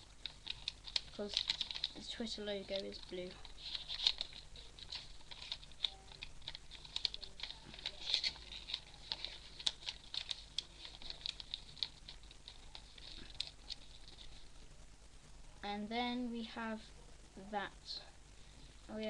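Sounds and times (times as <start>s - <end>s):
paper being folded and creased: 0.0s - 14.5s.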